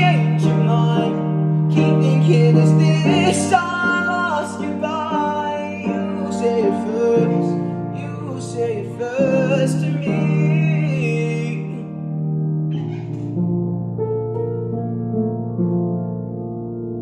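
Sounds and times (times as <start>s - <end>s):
man singing a slow ballad: 0.0s - 12.2s
piano accompaniment: 0.0s - 17.0s.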